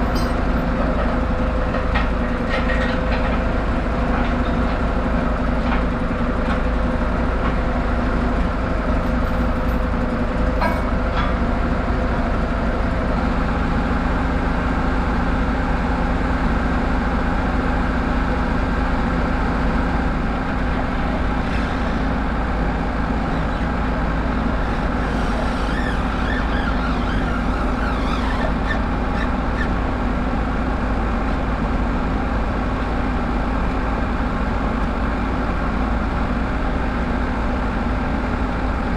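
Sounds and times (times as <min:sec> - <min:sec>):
band sawmill sawing log: 0:20.4 - 0:30.4.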